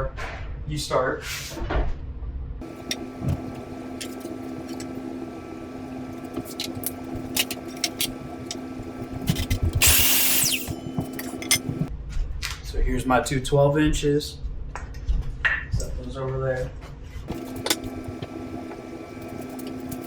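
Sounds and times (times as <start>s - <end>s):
power saw motor humming: 2.6s - 11.9s, 17.3s - 20.0s
saw cutting through wood: 6.2s - 11.7s.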